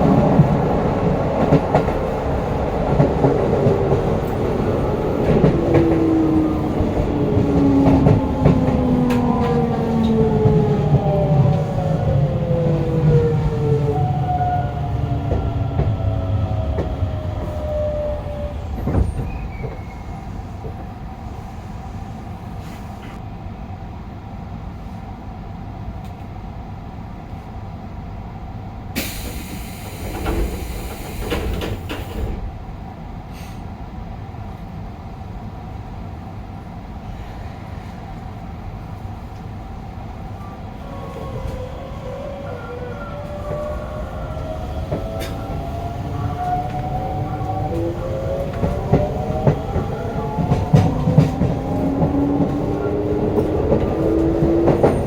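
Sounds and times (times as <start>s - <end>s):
wheels rumbling on track: 0.0s - 23.2s, 39.2s - 55.0s
train inverter whine: 0.0s - 33.2s, 38.1s - 55.0s
air hiss: 29.0s - 32.3s.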